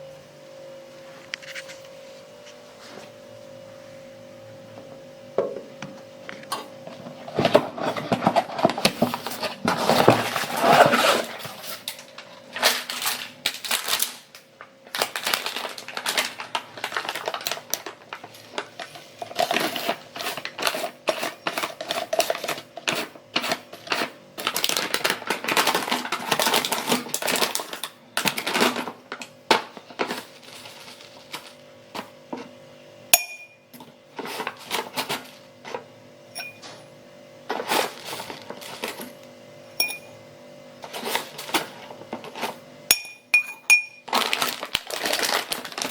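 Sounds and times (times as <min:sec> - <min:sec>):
spoon clinking against glass: 0:33.2 - 0:33.6, 0:36.4 - 0:36.6, 0:39.8 - 0:40.2, 0:42.9 - 0:44.0.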